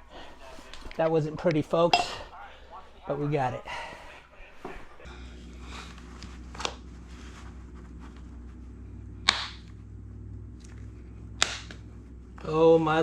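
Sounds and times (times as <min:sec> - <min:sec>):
low steady hum: 0:00.0 - 0:13.0
sharp snaps of rubber and metal: 0:09.2 - 0:09.7, 0:11.4 - 0:11.8.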